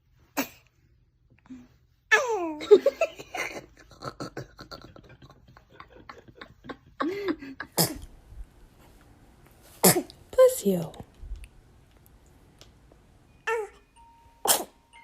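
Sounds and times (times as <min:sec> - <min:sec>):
person laughing and giggling: 0:02.5 - 0:07.8.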